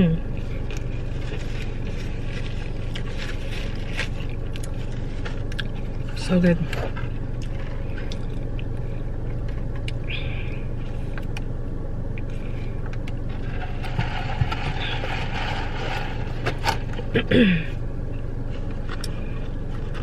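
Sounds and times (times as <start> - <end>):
car engine hum from inside: 0.0 - 20.0
chewing clicks: 5.4 - 5.8.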